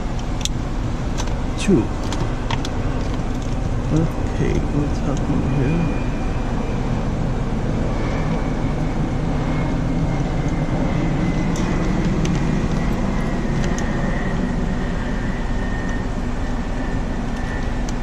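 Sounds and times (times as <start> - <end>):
mechanical hum and rush: 0.0 - 18.0
high whine falling in pitch: 3.7 - 18.0.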